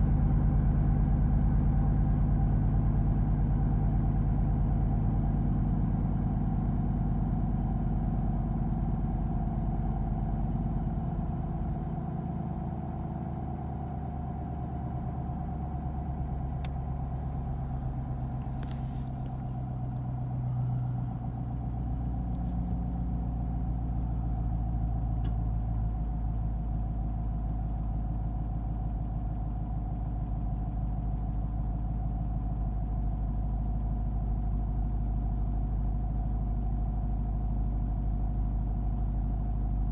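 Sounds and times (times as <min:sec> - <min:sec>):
car engine idling: 0:00.0 - 0:39.9
faint engine ticks: 0:16.4 - 0:21.0, 0:24.9 - 0:26.3, 0:37.6 - 0:39.9.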